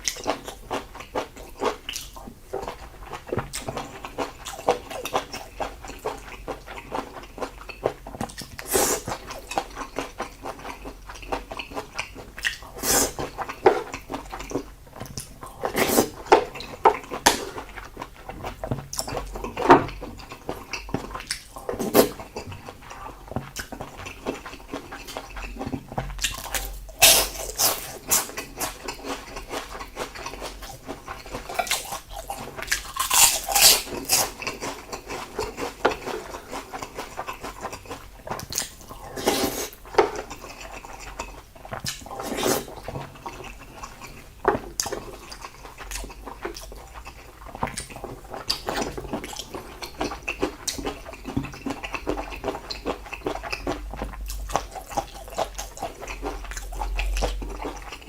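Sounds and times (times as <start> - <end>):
wet chewing and lip-smacking: 0.0 - 58.0.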